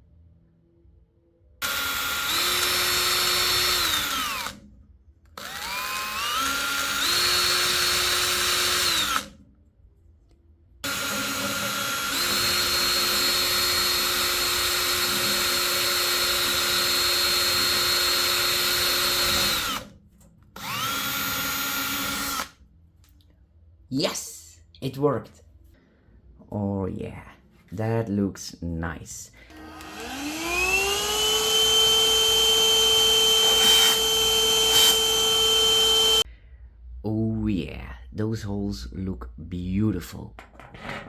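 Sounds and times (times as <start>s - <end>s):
power drill whining through plastic: 1.6s - 4.7s, 5.4s - 9.4s, 10.8s - 19.9s, 20.6s - 22.6s, 29.5s - 36.2s.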